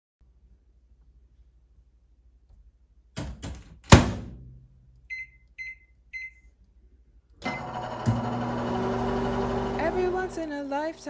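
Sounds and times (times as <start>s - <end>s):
microwave clicks: 7.4s - 9.6s
microwave humming: 7.4s - 11.0s.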